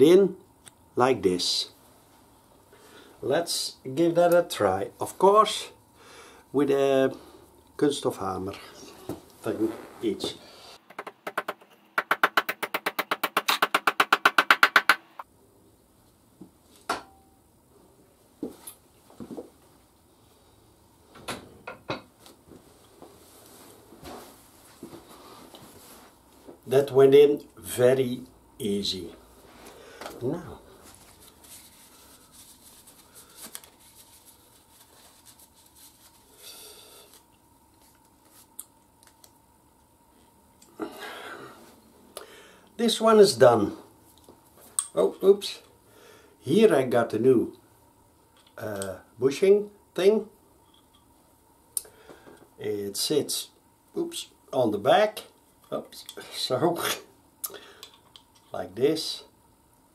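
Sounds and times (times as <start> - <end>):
hammer tapping on metal: 10.9 - 15.2
scratchy rustle: 30.8 - 36.3
light clicks of metal parts: 57.8 - 58.6.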